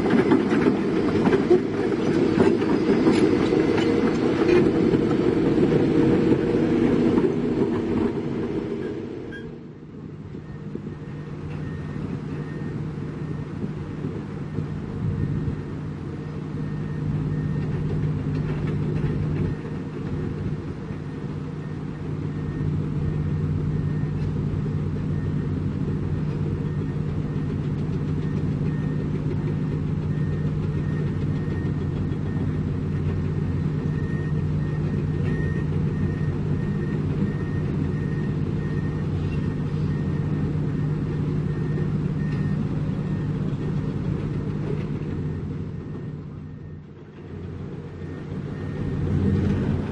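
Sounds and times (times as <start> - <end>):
heavy diesel engine droning: 0.0 - 49.9
faint high beep: 8.8 - 9.6.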